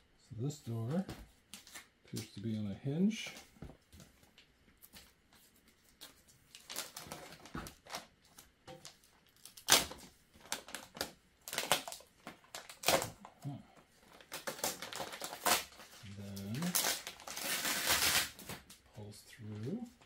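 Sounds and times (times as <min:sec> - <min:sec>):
packaging clicks and rustles: 0:05.9 - 0:13.3, 0:14.0 - 0:18.8.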